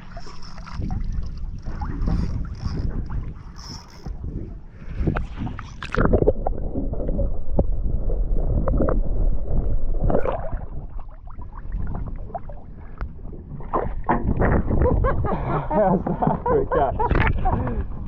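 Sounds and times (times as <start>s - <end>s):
water gurgling around boat hull: 0.0s - 18.0s
low rumble: 4.6s - 18.0s.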